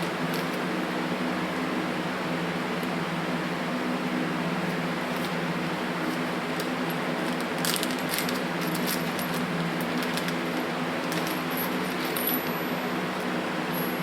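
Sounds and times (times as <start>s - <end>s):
shop fan humming: 0.0s - 14.0s
small metal parts clinking: 6.6s - 12.7s.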